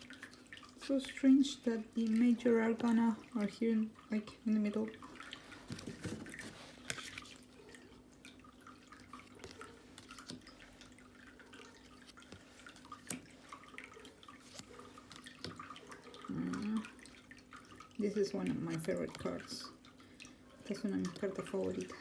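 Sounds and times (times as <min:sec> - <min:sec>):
cards clicking and rustling: 0:05.6 - 0:07.4, 0:09.2 - 0:10.6.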